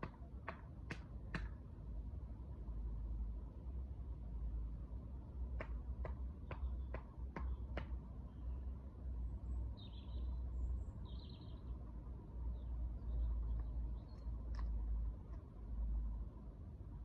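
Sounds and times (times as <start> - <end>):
bird high chirps: 9.8 - 11.7
bird sharp ticks: 13.5 - 15.4.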